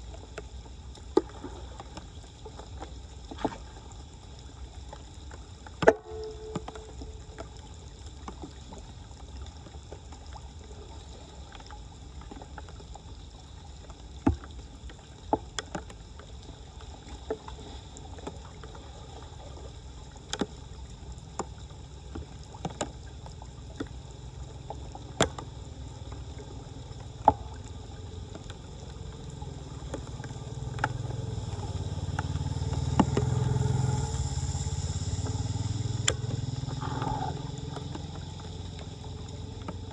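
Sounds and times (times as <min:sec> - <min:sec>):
floodwater running: 0:00.0 - 0:39.9
low engine rumble: 0:04.0 - 0:08.7, 0:18.0 - 0:39.9
ringing metallic clank: 0:06.0 - 0:07.0.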